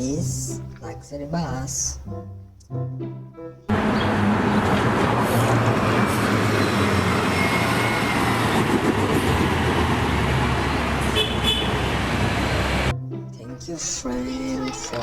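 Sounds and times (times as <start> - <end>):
moving vehicle rumble: 3.7 - 13.0.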